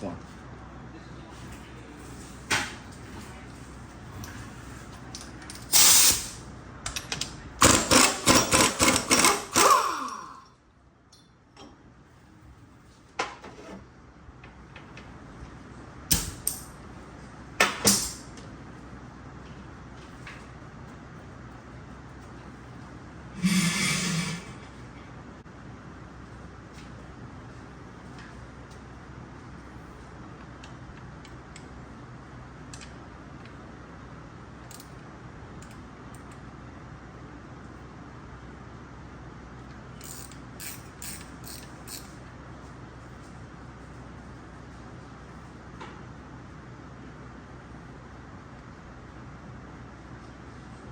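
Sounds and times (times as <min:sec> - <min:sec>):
steady low hum: 0:00.0 - 0:50.9
metal parts and tools clicking: 0:40.0 - 0:42.2.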